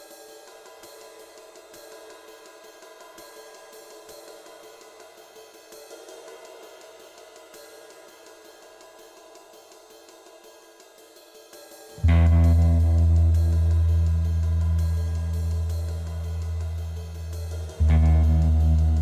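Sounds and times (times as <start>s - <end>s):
background music with cymbal beat: 0.0s - 19.0s.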